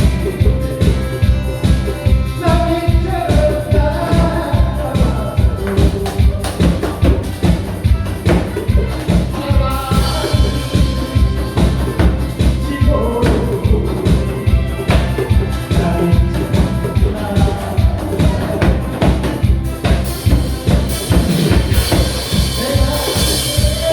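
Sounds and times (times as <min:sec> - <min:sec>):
upbeat music with driving beat: 0:00.0 - 0:23.9.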